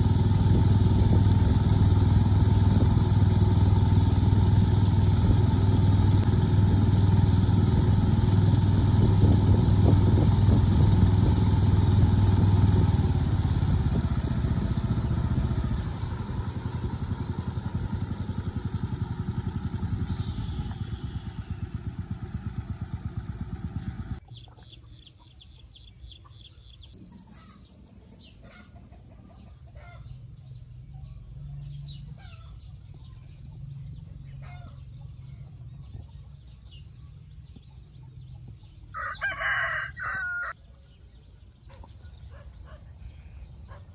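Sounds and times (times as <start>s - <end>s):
small motor engine running: 0.0s - 24.6s, 26.7s - 40.6s, 41.6s - 43.9s
birds chirping: 16.2s - 43.9s.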